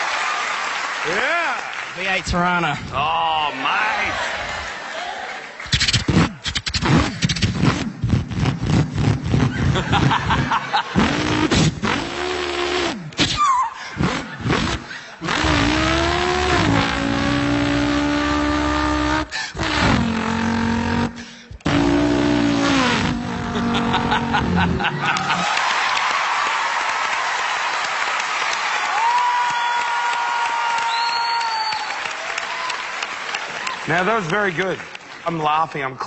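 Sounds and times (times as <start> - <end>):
man imitating car engine: 8.5 - 25.4.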